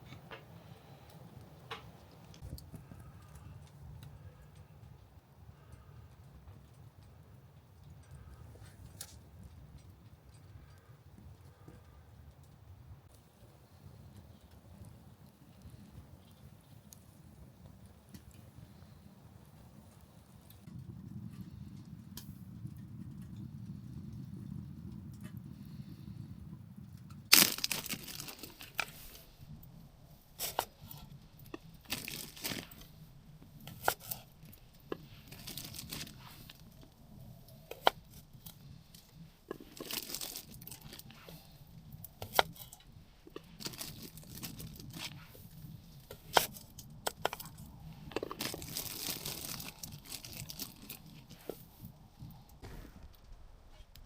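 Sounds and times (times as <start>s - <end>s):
rustling and crinkling: 27.0s - 54.0s.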